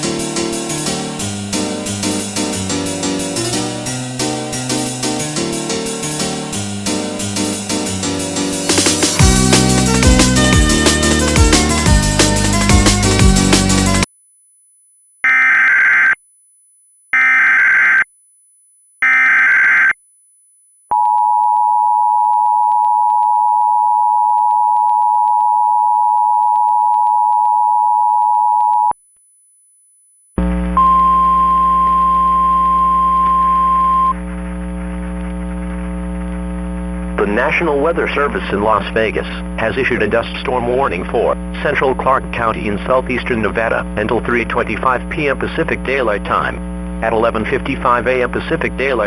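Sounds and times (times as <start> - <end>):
steady low buzz: 8.7 - 14.1, 30.4 - 49.0
higher steady tone: 30.4 - 34.2
two-tone attention signal: 30.8 - 34.2.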